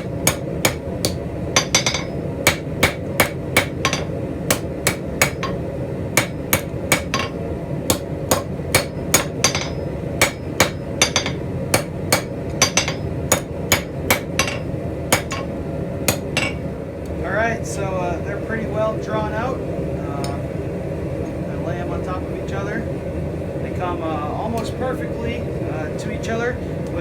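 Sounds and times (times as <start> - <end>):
hammer striking steel on anvil: 0.0 - 5.6, 6.2 - 15.5, 16.1 - 16.6
steady low rush: 0.0 - 27.0.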